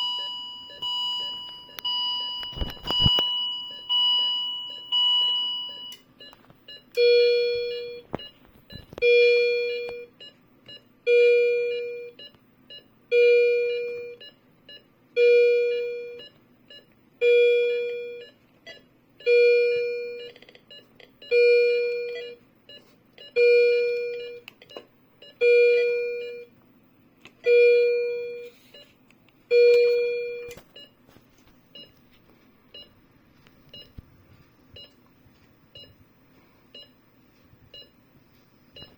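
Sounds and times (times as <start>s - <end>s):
patient monitor alarm tone: 0.0s - 26.5s, 27.4s - 28.9s, 29.5s - 30.9s.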